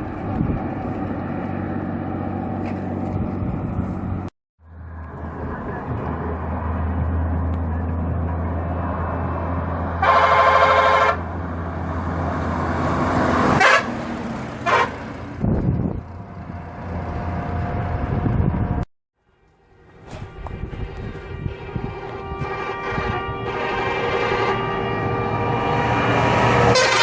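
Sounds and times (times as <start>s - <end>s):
bus diesel engine running: 0.0s - 27.0s
bus horn blast: 10.0s - 11.3s, 13.5s - 15.2s, 20.0s - 27.0s.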